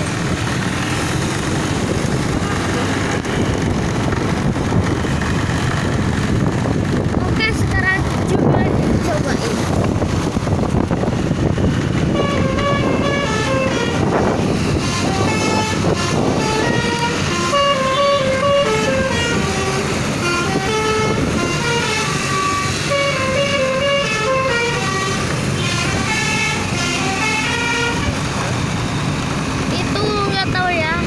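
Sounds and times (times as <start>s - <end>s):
low engine and road rumble: 0.0s - 31.0s
bus horn playing a fast melody: 12.0s - 28.4s.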